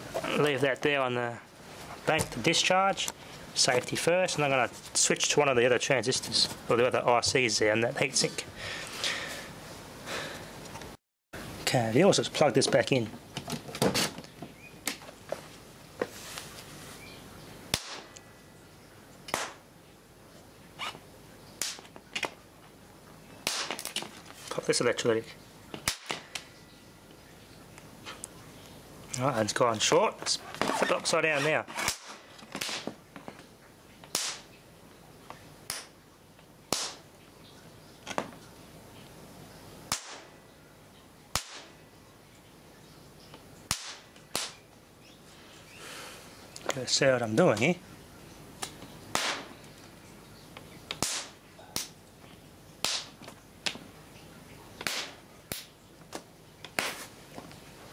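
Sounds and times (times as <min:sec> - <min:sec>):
electric arc snapping cracks: 0:17.7 - 0:18.2, 0:19.3 - 0:19.7, 0:21.6 - 0:22.4, 0:23.4 - 0:24.0, 0:25.8 - 0:26.2, 0:31.0 - 0:33.0, 0:34.0 - 0:34.5, 0:35.7 - 0:36.0, 0:36.7 - 0:37.1, 0:39.9 - 0:40.3, 0:41.3 - 0:41.8, 0:43.7 - 0:44.6, 0:48.6 - 0:49.7, 0:50.9 - 0:52.0, 0:52.8 - 0:53.8, 0:54.8 - 0:55.7.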